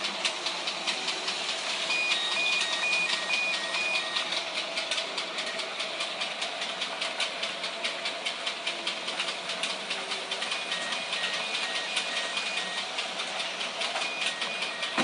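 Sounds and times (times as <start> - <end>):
wheels clicking over rail joints: 4.0 - 15.0.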